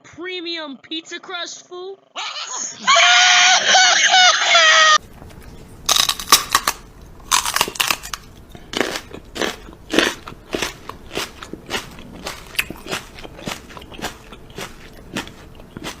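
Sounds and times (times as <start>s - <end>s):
crisp chewing crunches: 5.0s - 16.0s.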